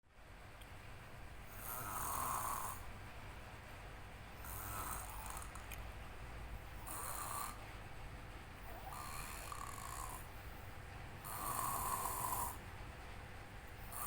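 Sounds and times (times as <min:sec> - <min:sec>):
boy snoring heavily: 0:01.6 - 0:02.8, 0:04.4 - 0:05.6, 0:06.8 - 0:07.6, 0:08.7 - 0:10.3, 0:11.2 - 0:12.6.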